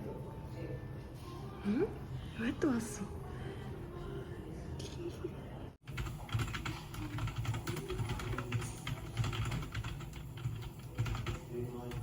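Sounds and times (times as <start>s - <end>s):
keyboard typing: 5.9s - 12.0s.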